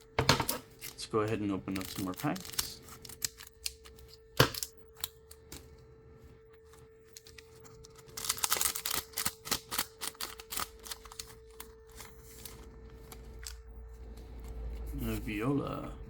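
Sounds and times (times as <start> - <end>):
foil wrapper crinkling and tearing: 0.6 - 5.4, 7.0 - 14.7.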